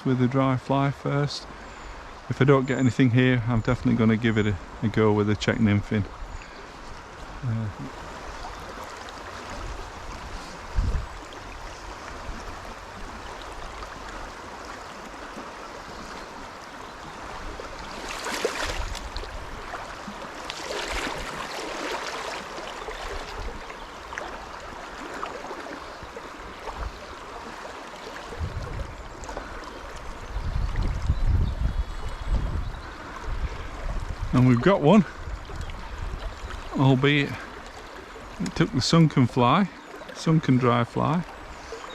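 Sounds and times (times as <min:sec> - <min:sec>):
river water rushing: 0:06.1 - 0:31.0, 0:32.8 - 0:41.9.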